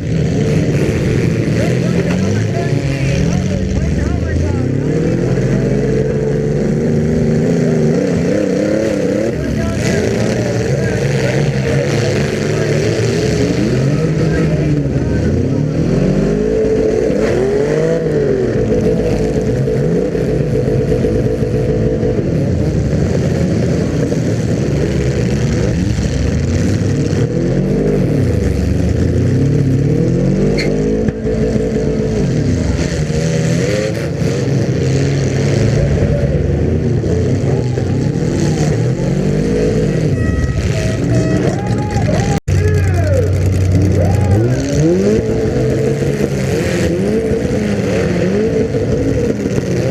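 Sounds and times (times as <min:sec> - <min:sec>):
car engines revving: 0:00.0 - 0:49.9.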